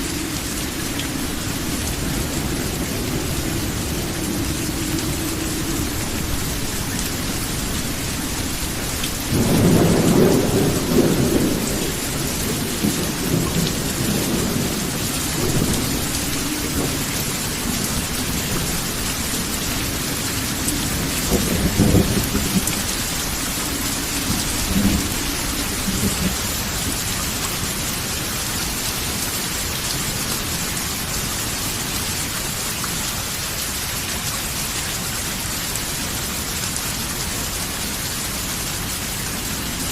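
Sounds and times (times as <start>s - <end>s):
rolling thunder: 0.0s - 27.5s
steady rain: 0.0s - 39.9s.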